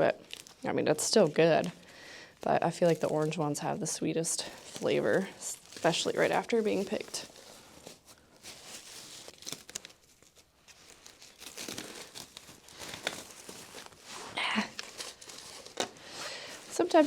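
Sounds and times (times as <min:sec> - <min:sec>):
plastic wrap crinkling and tearing: 0:00.0 - 0:17.0.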